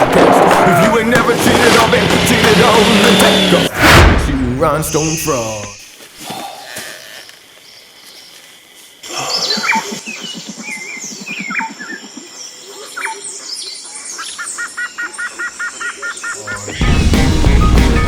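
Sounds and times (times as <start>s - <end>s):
repeated paired chirp: 3.3s - 5.9s.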